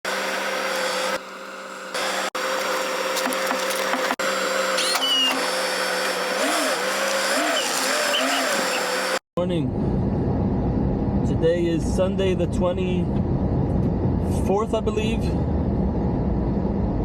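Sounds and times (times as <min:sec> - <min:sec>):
motor humming with whine: 0:00.1 - 0:09.2.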